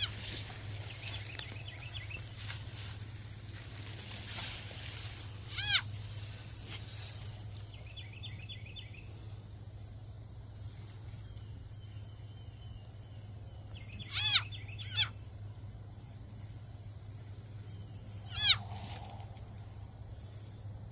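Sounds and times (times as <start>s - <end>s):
sharp animal calls: 0.0s - 0.3s, 5.5s - 5.9s, 14.0s - 15.2s, 18.2s - 19.2s
high-pitched insect whine: 0.0s - 20.9s
faint bird chirps: 11.2s - 15.2s.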